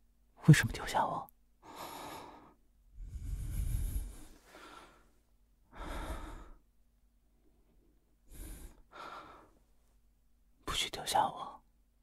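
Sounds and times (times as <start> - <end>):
person breathing heavily: 1.6 - 6.7, 8.2 - 9.6.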